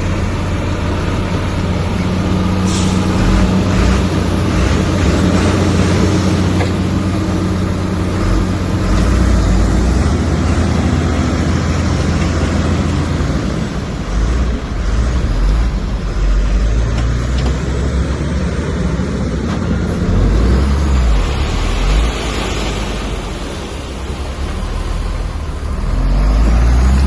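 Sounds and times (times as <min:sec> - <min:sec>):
bulldozer diesel engine drone: 0:00.0 - 0:27.0
hiss: 0:02.6 - 0:03.2.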